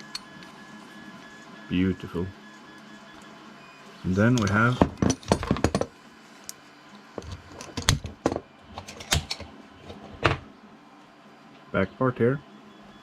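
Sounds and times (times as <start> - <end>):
metal parts clicking and clinking: 4.3 - 5.9, 7.2 - 9.4.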